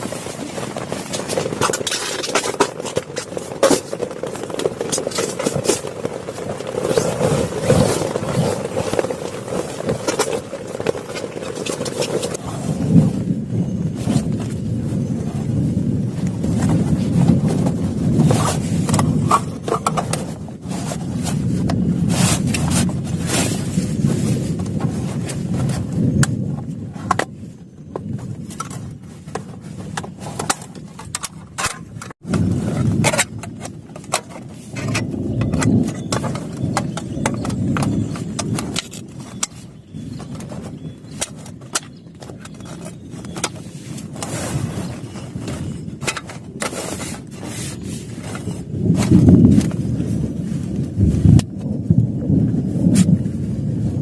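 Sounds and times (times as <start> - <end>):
heavy rain drumming on plastic tarp: 0.0 - 27.3, 40.3 - 54.0.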